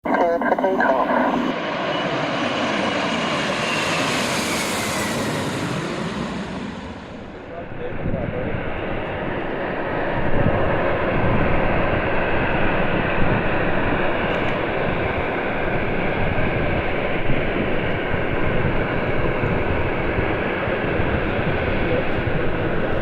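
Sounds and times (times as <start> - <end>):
jet engine roar: 0.0 - 23.0
wind buffeting microphone: 5.0 - 23.0.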